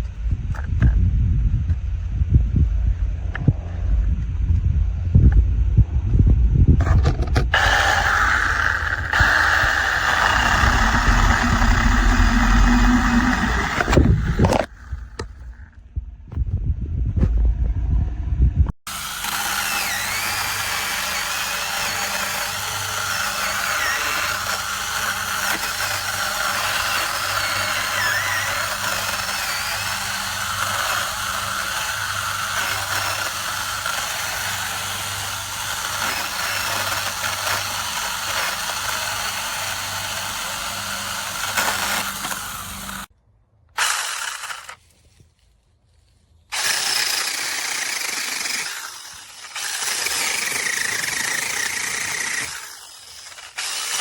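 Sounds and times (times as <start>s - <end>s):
electric chainsaw cutting wood: 7.4s - 15.6s, 18.8s - 43.1s, 43.7s - 44.9s, 46.5s - 54.0s.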